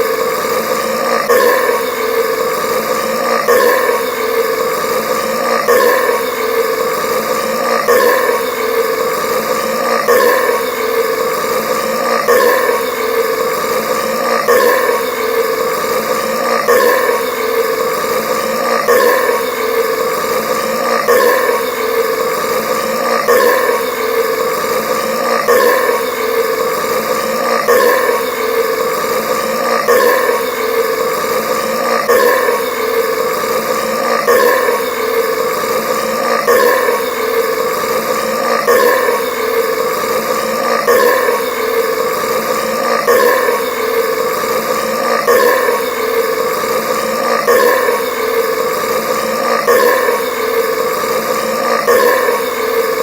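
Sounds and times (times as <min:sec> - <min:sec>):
long burp: 0:00.5 - 0:02.4, 0:03.0 - 0:04.6, 0:05.2 - 0:06.8, 0:07.4 - 0:09.0, 0:09.6 - 0:13.4, 0:14.0 - 0:15.6, 0:16.2 - 0:17.8, 0:18.4 - 0:20.0, 0:20.6 - 0:22.2, 0:22.8 - 0:24.3, 0:24.9 - 0:26.6, 0:27.2 - 0:30.9, 0:31.6 - 0:33.2, 0:36.1 - 0:37.6, 0:40.4 - 0:41.9.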